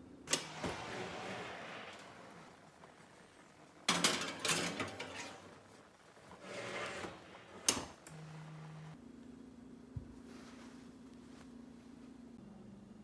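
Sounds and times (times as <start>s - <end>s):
dishes and utensils clattering: 0.5s - 7.8s.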